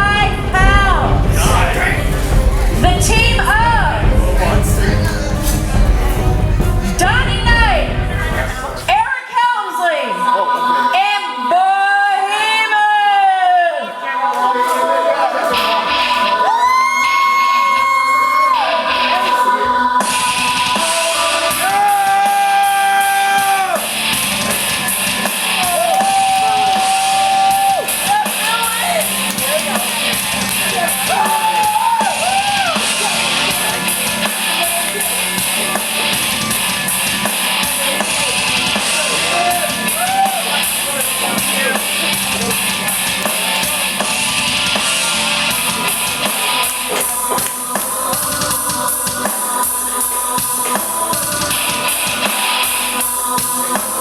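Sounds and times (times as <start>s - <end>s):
drum kit: 0.0s - 9.1s, 17.8s - 54.0s
loud rock music: 0.0s - 9.1s, 15.5s - 54.0s
person singing: 0.0s - 9.2s, 9.8s - 54.0s.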